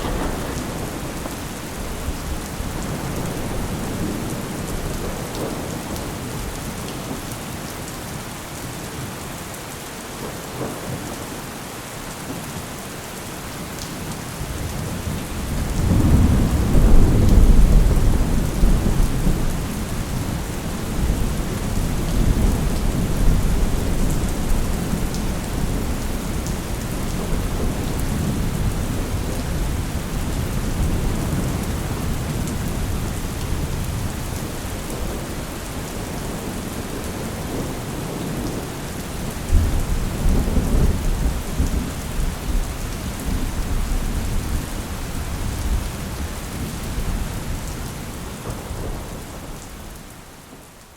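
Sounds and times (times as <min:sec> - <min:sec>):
rolling thunder: 0:00.0 - 0:06.4, 0:14.5 - 0:38.7.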